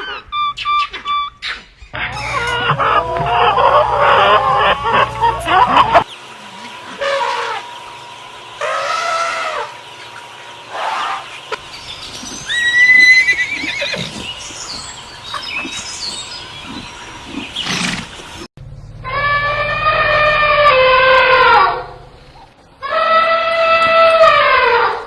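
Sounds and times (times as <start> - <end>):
horse neighing: 12.5 - 14.3.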